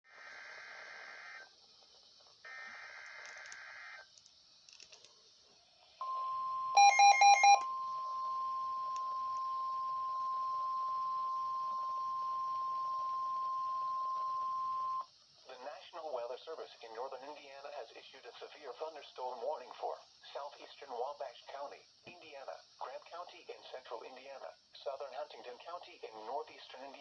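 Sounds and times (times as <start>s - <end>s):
loud short beeps: 6.0s - 9.4s
steady warning alarm tone: 6.0s - 15.0s.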